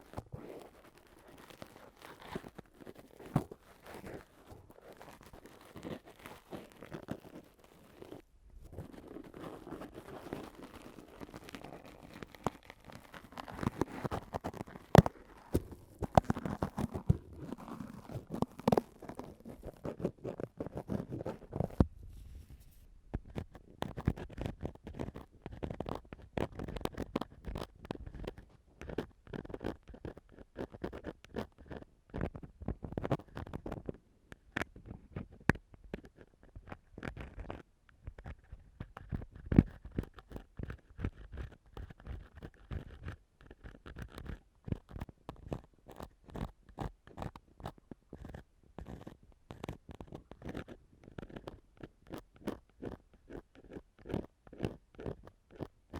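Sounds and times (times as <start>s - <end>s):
ear pick scratching microphone: 0.0s - 55.9s
deep rubbing sound: 20.7s - 22.9s.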